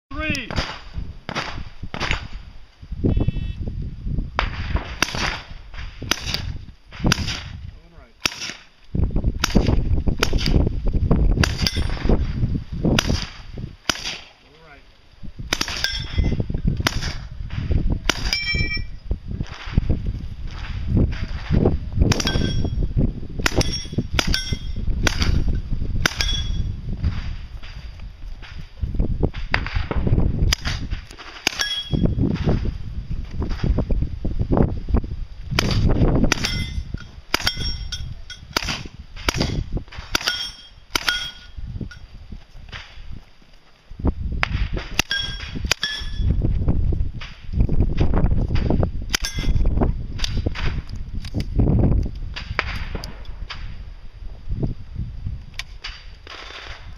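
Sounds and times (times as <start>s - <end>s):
bullets ringing on steel targets: 11.5s - 12.0s, 15.6s - 16.4s, 18.2s - 19.0s, 22.2s - 22.8s, 23.5s - 25.3s, 26.1s - 26.7s, 31.5s - 32.1s, 36.3s - 38.7s, 40.2s - 42.0s, 45.0s - 46.3s, 49.2s - 49.7s.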